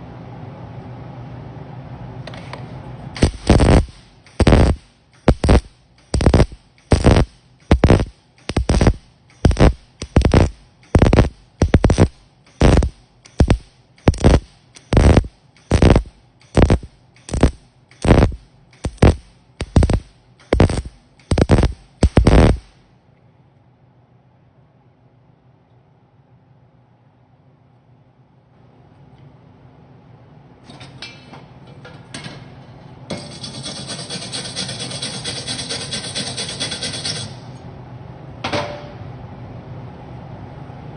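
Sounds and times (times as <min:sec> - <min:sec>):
welding arc bursts: 0:03.2 - 0:22.8.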